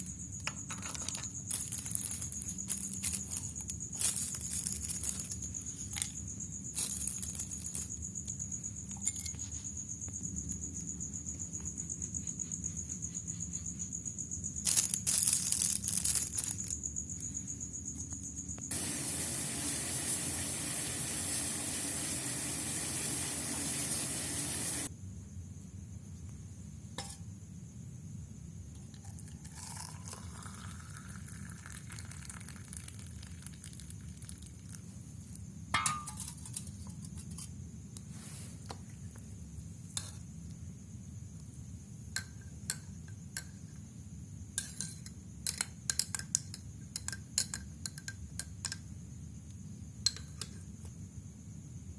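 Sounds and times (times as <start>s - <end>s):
hot water pouring into glass: 18.7s - 24.9s, 29.2s - 34.5s.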